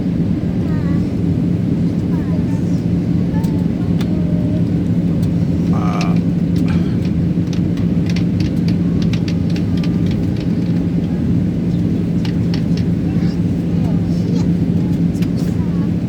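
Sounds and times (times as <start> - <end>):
airliner cabin drone: 0.0 - 16.0
small clicks and knocks: 7.0 - 10.9.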